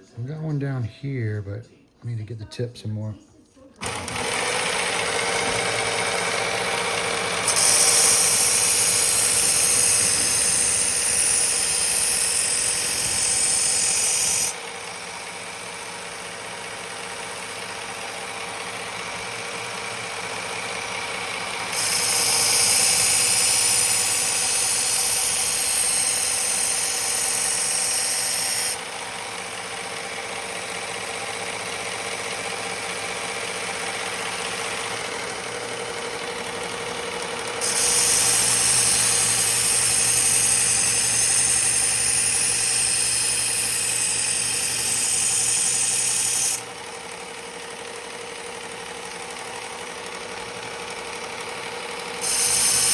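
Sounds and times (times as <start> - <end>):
sharpening machine motor hum: 3.8 - 52.9
blade grinding hiss: 7.4 - 14.5, 21.8 - 28.8, 37.6 - 46.6, 52.2 - 52.9.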